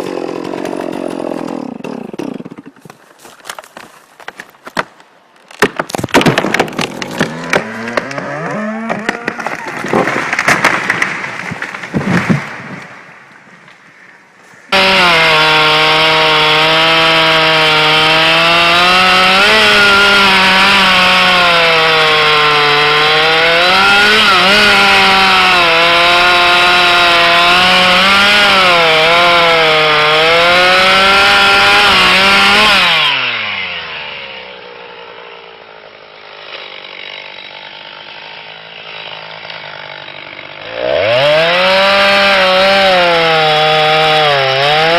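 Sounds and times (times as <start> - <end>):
chainsaw cutting wood: 0.0 - 13.1, 14.7 - 44.9
loud cracking knocks: 5.5 - 12.9.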